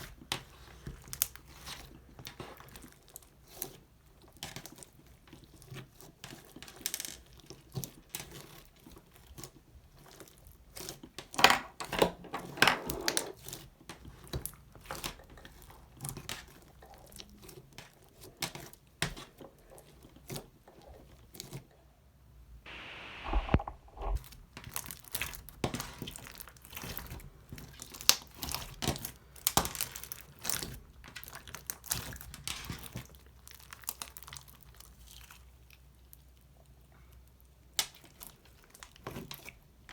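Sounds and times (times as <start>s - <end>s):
slime squelch: 13.3s - 22.0s, 22.7s - 39.9s
slime crackling and popping: 23.2s - 35.4s.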